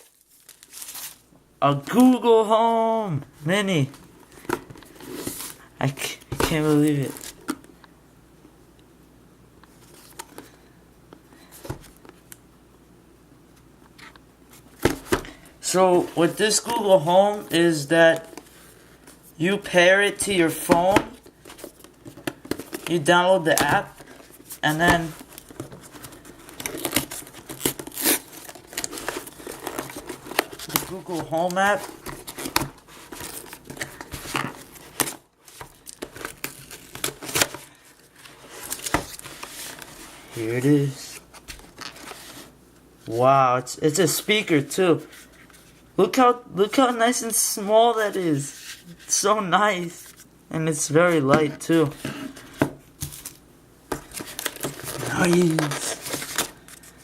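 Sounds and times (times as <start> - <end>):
packaging crinkling and tearing: 0.0 - 2.1, 21.1 - 40.0, 54.0 - 57.0.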